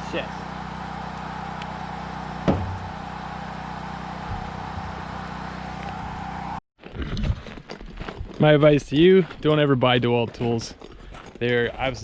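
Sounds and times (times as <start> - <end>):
low machine hum: 0.0 - 6.6
sharp knock: 2.4 - 2.8.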